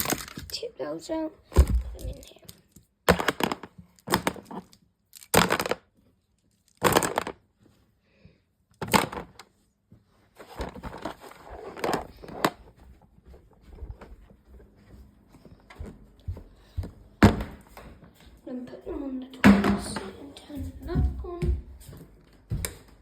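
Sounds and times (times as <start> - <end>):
plastic toys clattering: 0.0 - 0.6, 1.6 - 7.4
plastic toys rattling and rustling: 0.0 - 0.7, 1.6 - 7.4, 10.4 - 12.7.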